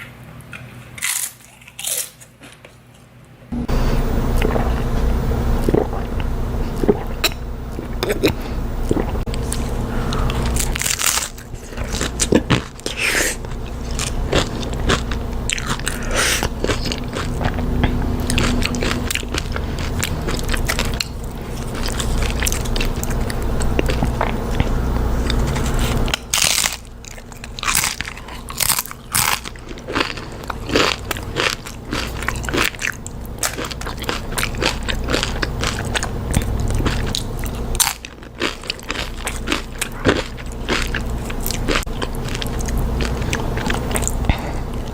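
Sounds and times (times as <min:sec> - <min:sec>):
steady low hum: 0:00.0 - 0:44.9
chip crunching: 0:00.4 - 0:02.7, 0:07.8 - 0:44.9
wet chewing: 0:05.6 - 0:44.9.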